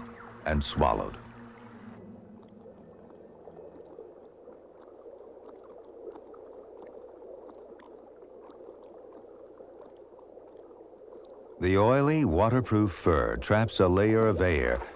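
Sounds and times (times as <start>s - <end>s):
stream water gurgling: 0.0s - 14.9s.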